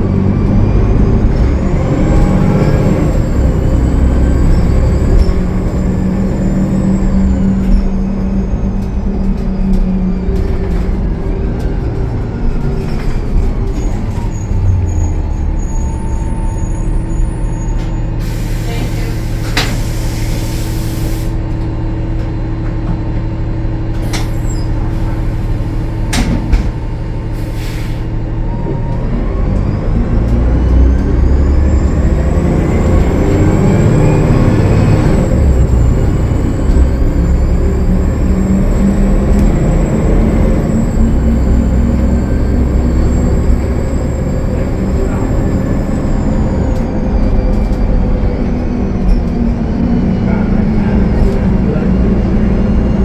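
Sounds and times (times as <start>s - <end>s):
rising engine whine: 0.0s - 18.5s, 19.2s - 53.0s
bus diesel engine idling: 0.0s - 53.0s
air hissing: 18.2s - 21.4s, 27.3s - 28.2s
clunks: 21.4s - 27.3s, 28.0s - 52.9s.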